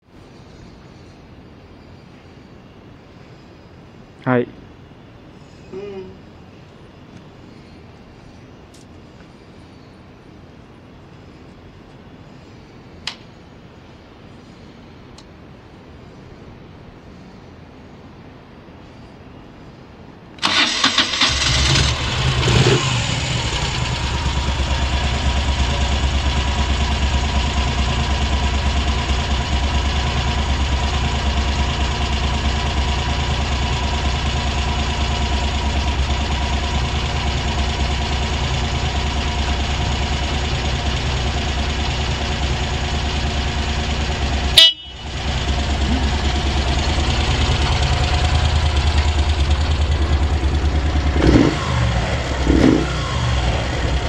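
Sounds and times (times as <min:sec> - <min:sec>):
motorcycle engine starting and idling: 0:20.4 - 0:54.0.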